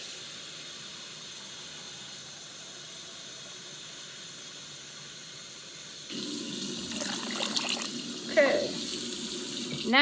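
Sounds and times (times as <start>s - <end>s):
tap water filling container: 6.1s - 10.0s.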